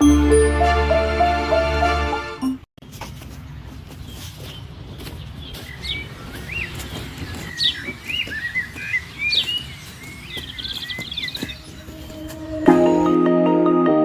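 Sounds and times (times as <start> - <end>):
birds chirping: 3.4 - 13.1.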